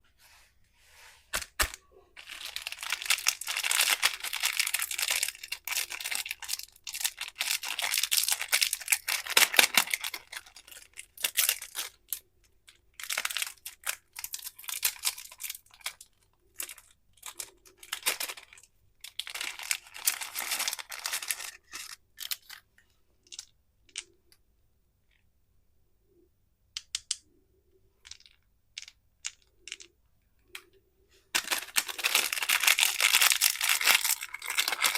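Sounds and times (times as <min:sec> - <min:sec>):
candy wrappers crinkling: 0:01.4 - 0:22.6, 0:31.3 - 0:34.9.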